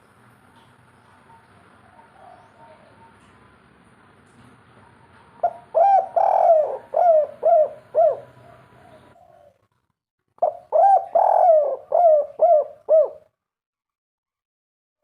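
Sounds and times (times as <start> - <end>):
dove cooing: 1.1 - 3.4, 4.8 - 9.6, 10.4 - 13.3.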